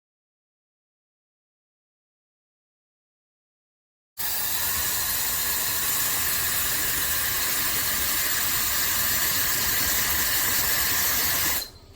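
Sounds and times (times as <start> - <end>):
hair dryer blowing air: 4.2 - 11.7.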